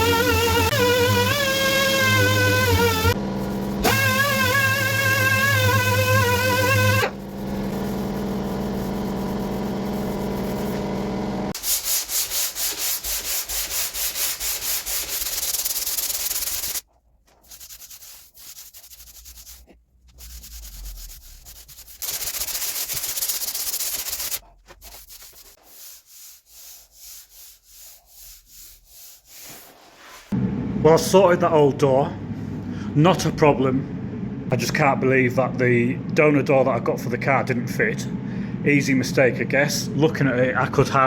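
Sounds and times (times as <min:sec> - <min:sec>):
machine hum: 0:00.0 - 0:11.6, 0:30.4 - 0:34.6, 0:37.5 - 0:40.1
sanding rubbing strokes: 0:00.0 - 0:30.4.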